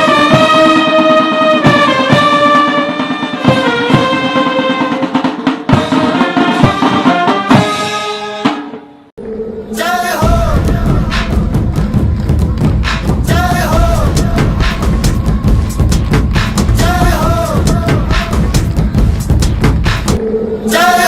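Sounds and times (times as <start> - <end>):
brass melody with drums: 0.0 - 9.1, 10.2 - 20.2.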